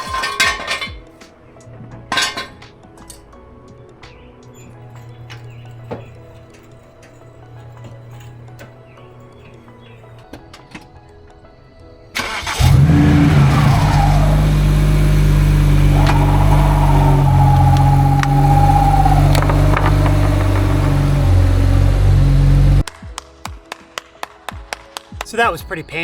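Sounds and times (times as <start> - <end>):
car engine starting and idling: 7.4 - 22.8.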